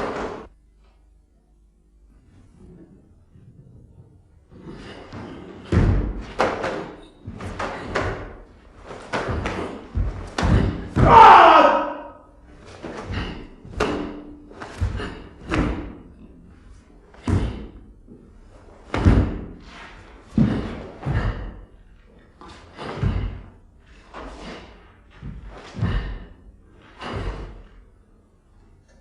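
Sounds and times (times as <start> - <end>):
feet stamping on floor: 5.1 - 11.7, 12.6 - 16.1, 17.2 - 21.7, 22.5 - 27.6.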